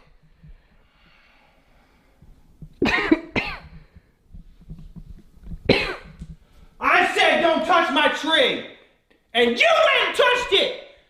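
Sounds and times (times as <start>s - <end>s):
person coughing: 2.8s - 3.7s, 5.7s - 6.2s.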